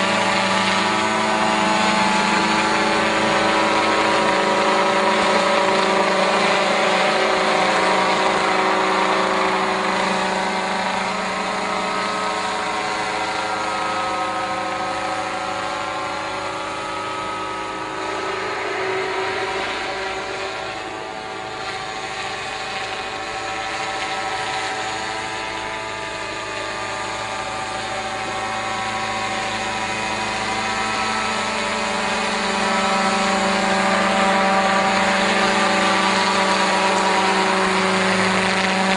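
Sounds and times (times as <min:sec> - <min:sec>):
engine humming steadily: 0:00.0 - 0:38.9.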